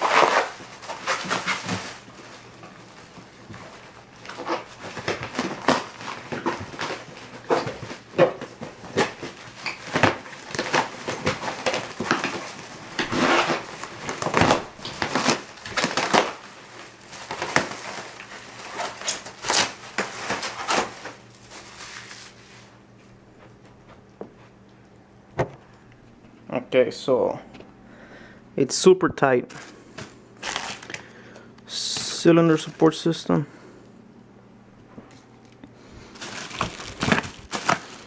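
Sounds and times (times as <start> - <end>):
packaging crinkling and crunching: 0.0 - 22.8, 30.0 - 31.1, 35.1 - 38.0
faint hum: 0.0 - 38.0.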